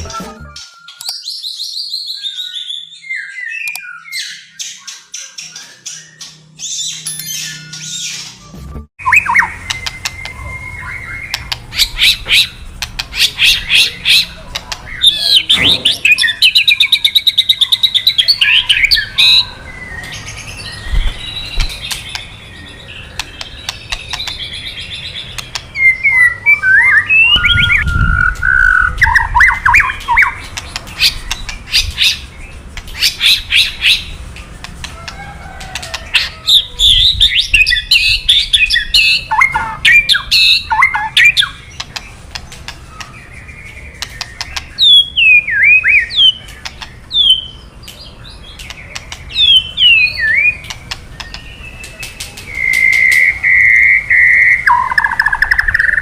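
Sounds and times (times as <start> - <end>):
bird whistling and warbling: 0.0 - 14.3, 36.2 - 41.6, 51.2 - 56.0.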